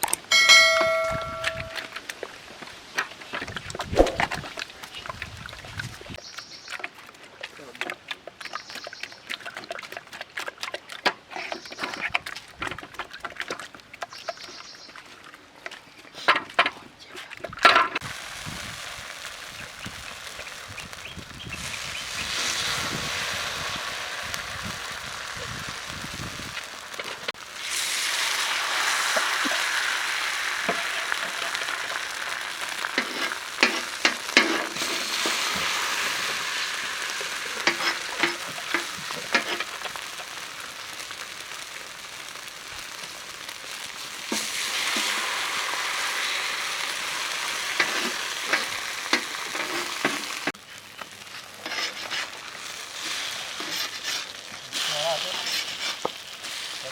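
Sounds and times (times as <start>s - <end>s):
omelette sizzling in a pan: 18.0s - 56.9s
spatula clicking and scraping: 32.8s - 35.5s, 37.5s - 40.4s, 47.7s - 50.5s, 51.6s - 52.4s, 53.1s - 54.5s, 55.3s - 56.2s.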